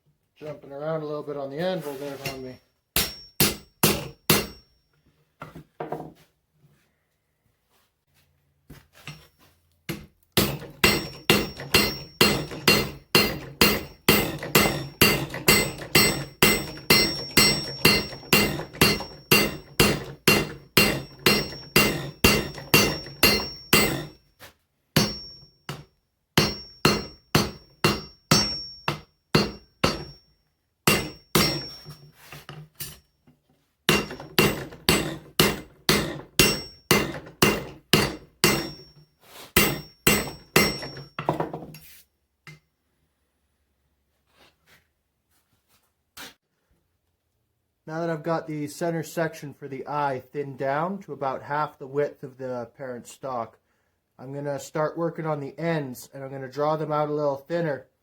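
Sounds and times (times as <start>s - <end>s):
hammer striking steel on anvil: 3.0s - 4.7s, 9.9s - 24.2s, 25.0s - 30.2s, 30.9s - 32.0s, 33.9s - 39.0s, 39.6s - 41.4s.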